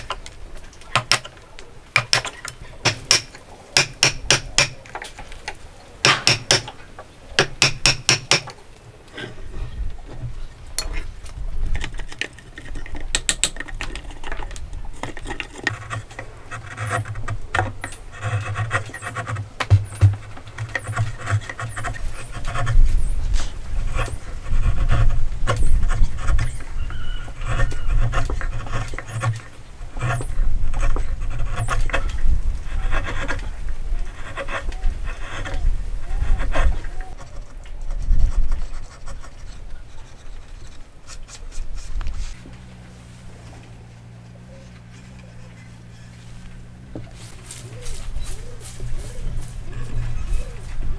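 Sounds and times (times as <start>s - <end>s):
hand tool scraping wood: 0.0s - 6.8s, 10.8s - 50.9s
hammer striking wood: 0.9s - 1.3s, 2.0s - 4.8s, 6.0s - 6.7s, 7.4s - 8.6s, 18.7s - 21.6s.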